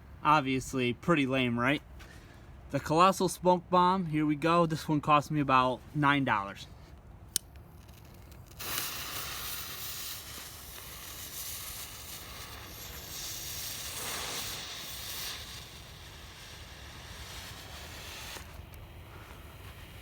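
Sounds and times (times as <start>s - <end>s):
smoke bomb hissing: 7.7s - 20.0s.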